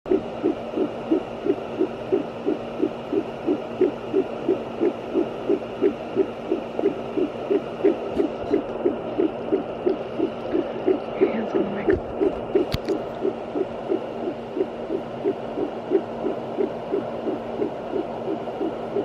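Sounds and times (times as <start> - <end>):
doppler hum and hiss: 0.1 - 19.0
fast heartbeat pulses: 0.1 - 19.0.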